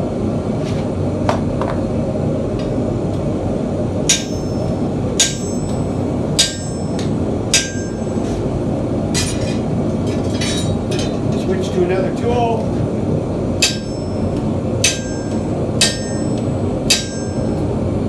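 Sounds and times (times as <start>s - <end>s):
steady rushing forge noise: 0.0s - 18.0s
hammer strikes ringing on punch: 14.8s - 17.6s.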